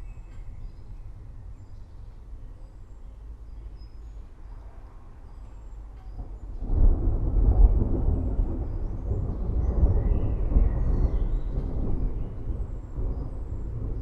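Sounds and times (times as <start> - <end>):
rolling thunder rumble: 6.2 - 14.0.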